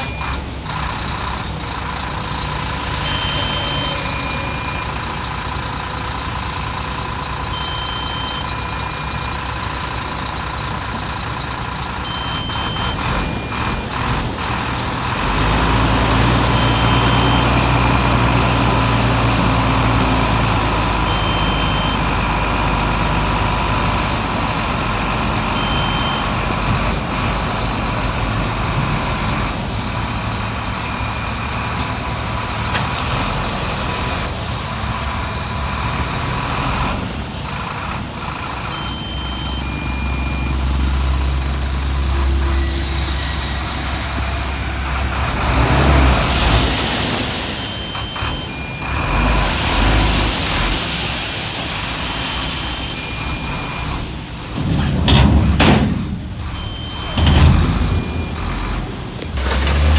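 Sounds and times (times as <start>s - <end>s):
heavy diesel machinery engine: 0.0s - 59.9s
metal clanks: 54.5s - 58.2s.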